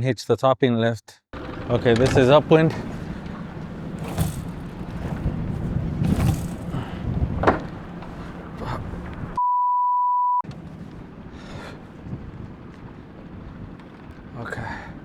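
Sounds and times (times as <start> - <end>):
small knocks: 1.4 - 9.4
wind rushing over microphone: 1.4 - 9.4, 10.5 - 15.0
censor bleep: 9.4 - 10.4.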